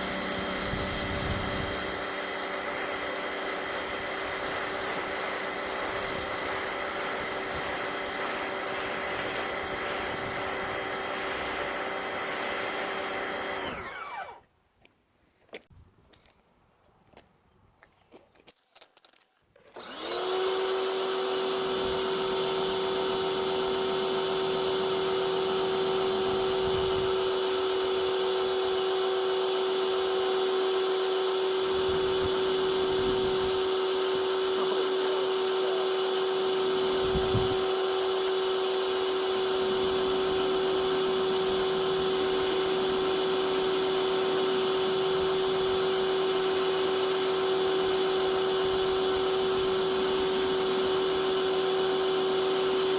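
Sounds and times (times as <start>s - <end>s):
pressure washer motor whining: 0.0s - 14.4s, 19.7s - 52.9s.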